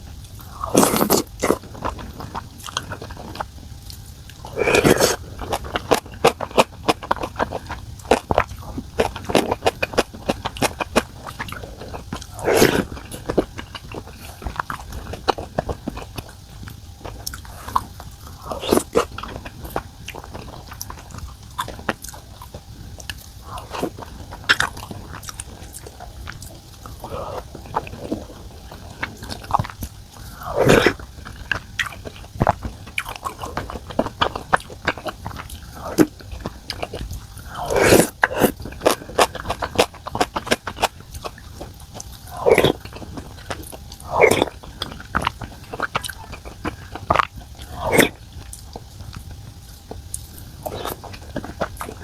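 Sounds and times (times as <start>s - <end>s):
person chewing and biting: 0.0s - 52.0s.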